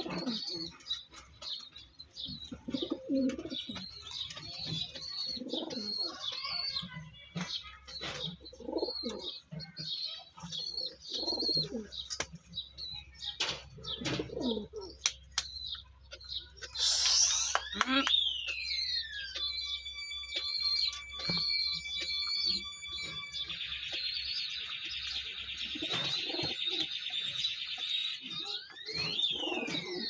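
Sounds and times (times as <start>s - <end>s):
pigeons cooing: 0.0s - 15.3s, 20.9s - 30.0s
high chirps: 14.8s - 30.0s.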